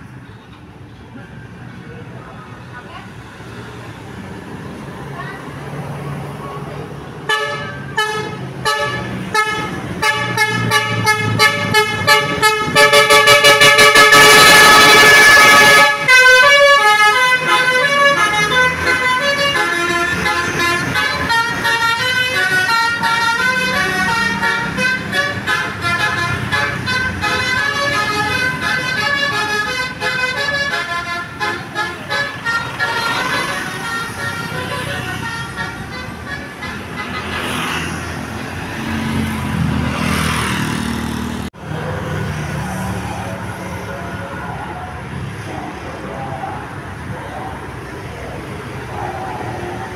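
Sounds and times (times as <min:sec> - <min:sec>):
musical bus horn playing tune: 0:07.2 - 0:38.6.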